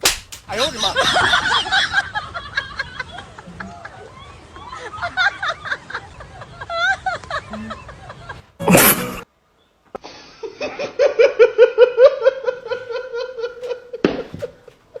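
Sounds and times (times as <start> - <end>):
rhythmic laugh: 0.5 - 9.2.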